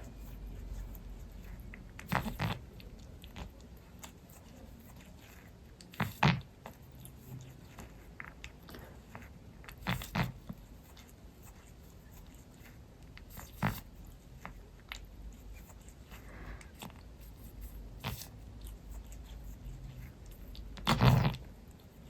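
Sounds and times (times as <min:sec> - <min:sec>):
cat licking and nibbling: 0:00.0 - 0:22.0.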